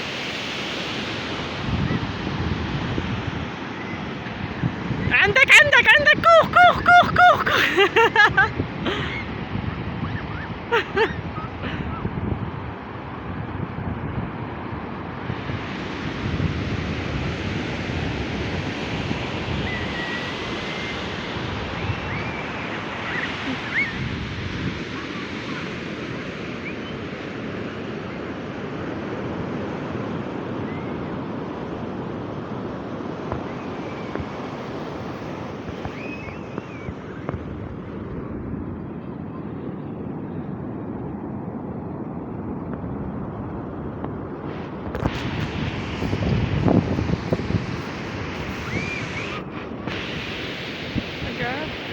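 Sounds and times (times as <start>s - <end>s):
ocean surf washing onto beach: 0.0s - 51.9s
wind buffeting microphone: 0.0s - 51.9s
faint high cries: 21.8s - 24.0s.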